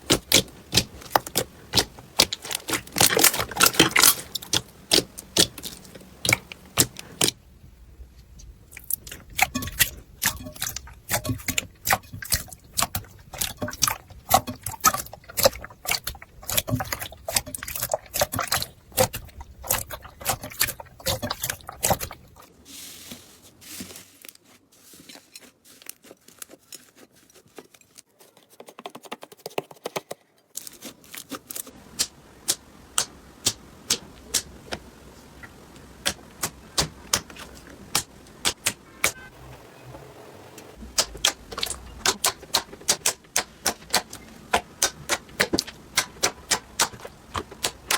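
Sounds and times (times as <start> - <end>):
sticky clicks and crackling pops: 0.0 - 7.4, 28.8 - 34.8, 35.4 - 39.3, 40.8 - 47.9.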